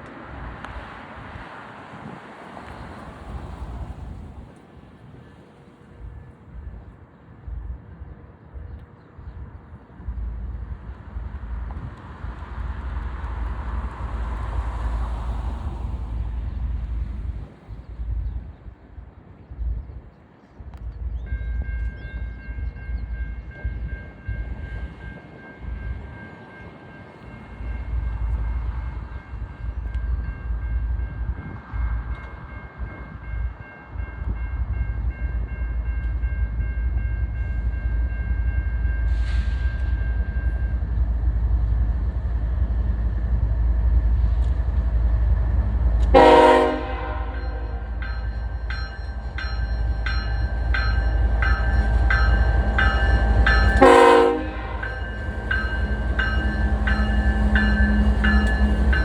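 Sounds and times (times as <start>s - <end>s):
low rumble of train: 0.0s - 59.0s
train clattering on rails: 20.6s - 59.0s
locomotive air horn chord: 46.1s - 48.0s, 53.4s - 55.2s
short loud horn blast: 46.2s - 47.8s, 53.8s - 54.9s.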